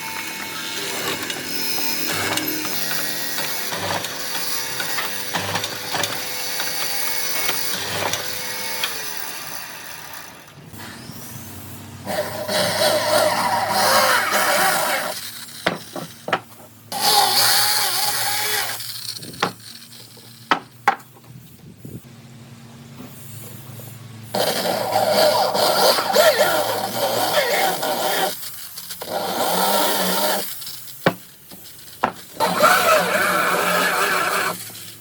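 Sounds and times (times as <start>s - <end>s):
woodworking tool humming: 0.0s - 22.0s, 24.0s - 35.0s
scraping on wood: 12.6s - 16.8s, 29.2s - 34.8s.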